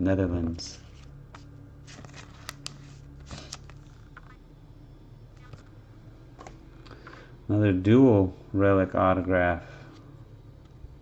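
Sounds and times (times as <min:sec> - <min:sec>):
cards and plastic sleeves rustling: 0:00.4 - 0:04.4.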